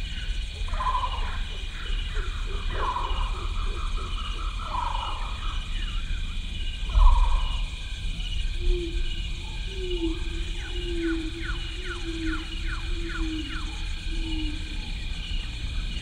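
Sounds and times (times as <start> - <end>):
low rumble: 0.0 - 12.6
high pulsing insect chirr: 0.0 - 16.0
birds chirping: 0.2 - 16.0.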